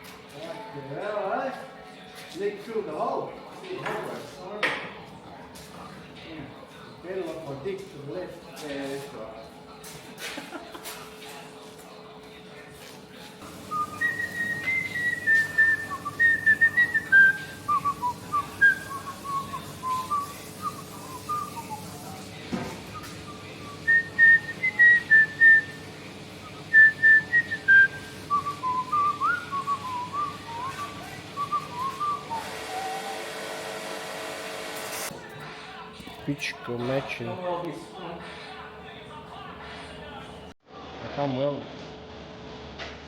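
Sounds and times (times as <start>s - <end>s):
person whistling a tune: 13.7s - 22.0s, 22.9s - 25.8s, 26.5s - 33.3s.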